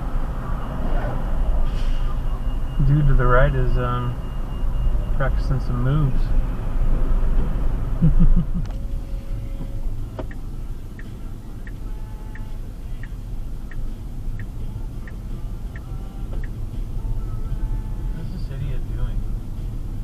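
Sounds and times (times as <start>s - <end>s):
car road and engine rumble: 0.0s - 20.0s
regular ticking: 10.2s - 16.6s.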